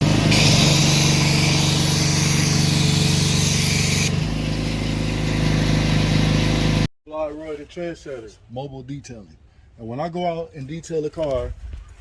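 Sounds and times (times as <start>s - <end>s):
pressure washer motor hum: 0.0s - 6.9s
pressure washer spray hissing: 0.0s - 6.9s.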